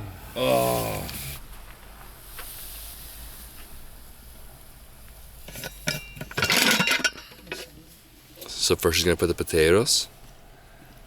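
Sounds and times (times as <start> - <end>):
faint sizzle: 0.0 - 5.4
utensils clinking: 5.5 - 7.7.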